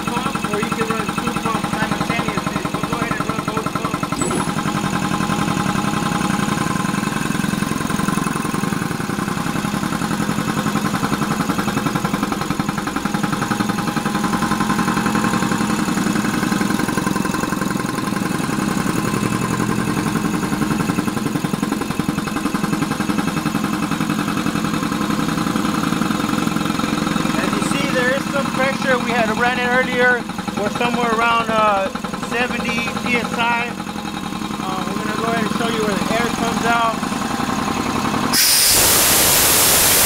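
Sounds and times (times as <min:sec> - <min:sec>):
air compressor chugging: 0:00.0 - 0:40.0.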